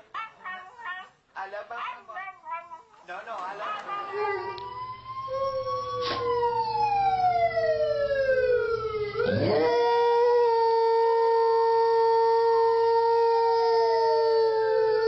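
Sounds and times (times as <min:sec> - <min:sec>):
dogs howling: 0:00.0 - 0:01.1, 0:03.6 - 0:07.2, 0:09.2 - 0:15.0.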